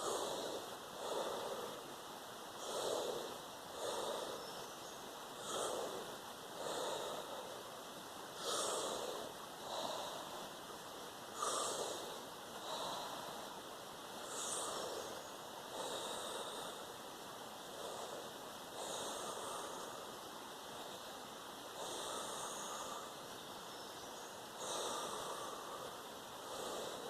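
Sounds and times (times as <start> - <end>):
person breathing forcefully: 0.0 - 2.0, 2.6 - 4.5, 5.4 - 7.7, 8.4 - 10.6, 11.3 - 13.6, 14.2 - 17.1, 17.7 - 20.2, 21.7 - 23.2, 24.6 - 27.0.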